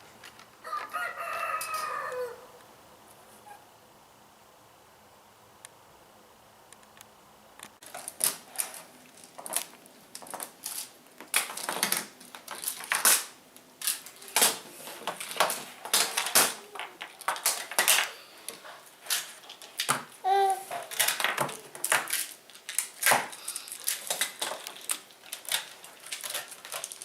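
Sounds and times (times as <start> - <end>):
plastic toy pieces clicking: 20.7 - 27.0.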